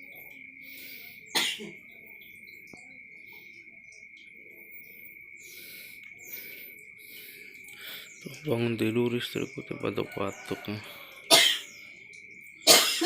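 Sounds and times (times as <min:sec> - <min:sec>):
woman coughing: 0:01.3 - 0:01.8, 0:11.3 - 0:11.6, 0:12.7 - 0:13.0.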